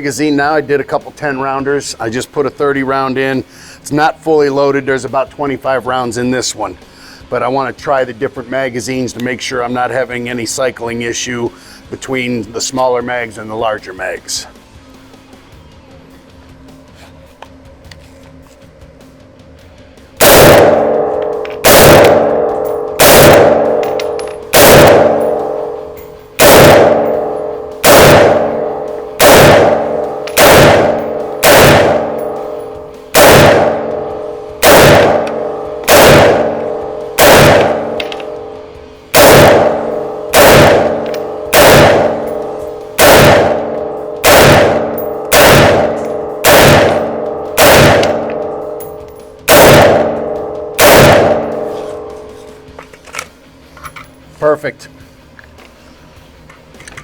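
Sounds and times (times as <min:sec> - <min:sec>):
rifle shots with ringing tail: 0:20.2 - 0:52.5.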